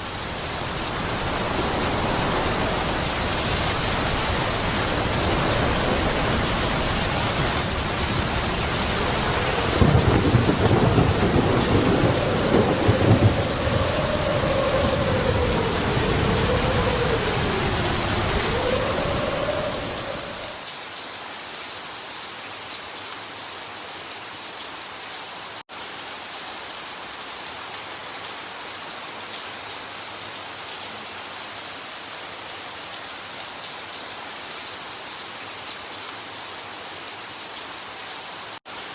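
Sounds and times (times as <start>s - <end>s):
thunder rumbling: 0.0s - 20.6s
heavy rain pouring: 0.0s - 22.1s, 25.4s - 38.9s.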